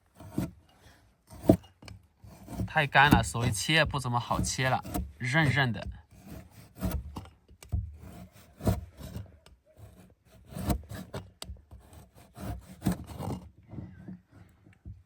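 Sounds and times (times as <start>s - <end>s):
knife sawing through sausage: 2.2s - 7.2s.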